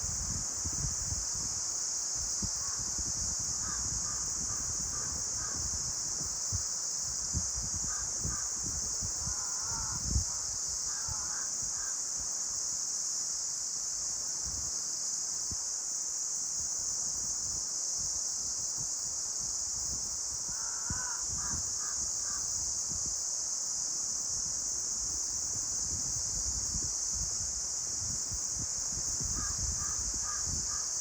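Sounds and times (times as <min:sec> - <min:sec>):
wind gusts buffeting microphone: 0:00.0 - 0:11.8, 0:19.4 - 0:23.1, 0:24.4 - 0:31.0
steady high hiss: 0:00.0 - 0:31.0
wind in trees: 0:00.0 - 0:31.0.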